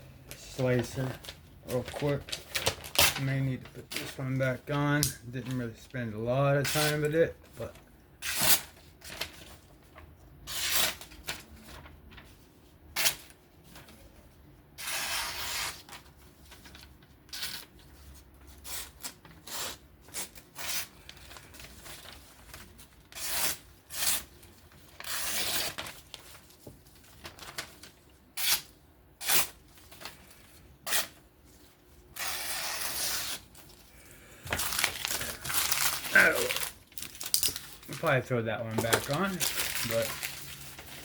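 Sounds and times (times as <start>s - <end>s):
knife slicing paper: 14.8s - 16.0s, 25.0s - 26.0s, 32.2s - 33.5s.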